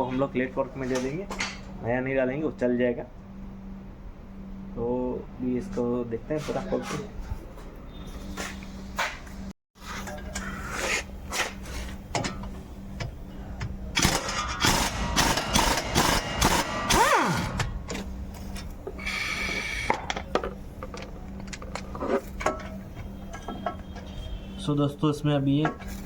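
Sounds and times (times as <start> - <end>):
power tool whirring: 14.0 - 17.7.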